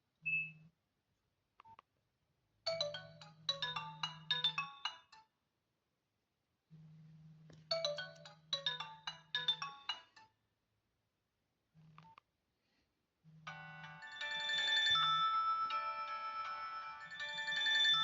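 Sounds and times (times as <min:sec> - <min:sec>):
phone ringtone: 0:02.7 - 0:05.1, 0:07.7 - 0:10.2, 0:13.5 - 0:18.0.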